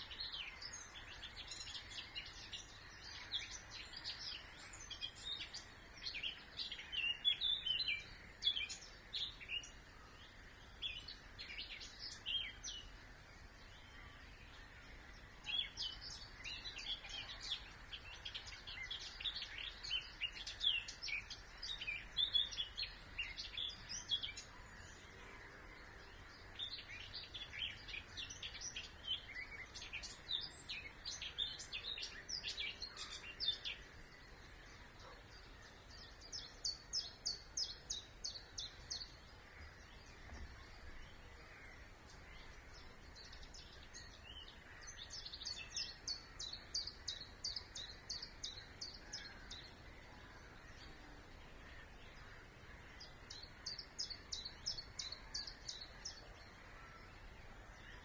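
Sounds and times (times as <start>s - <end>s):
faint steady background noise: 0.0s - 58.0s
songbirds chirping: 0.0s - 58.0s.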